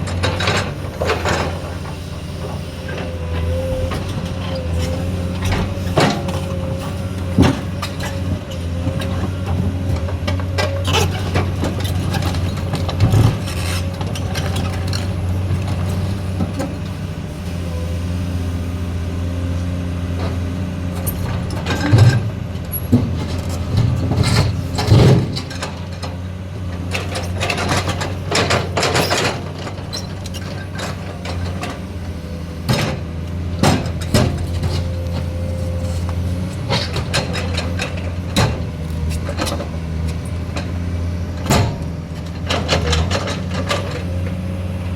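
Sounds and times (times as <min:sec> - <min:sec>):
excavator diesel engine running: 0:00.0 - 0:44.9
clanks and knocks: 0:21.0 - 0:26.2, 0:32.7 - 0:40.8, 0:41.4 - 0:44.2.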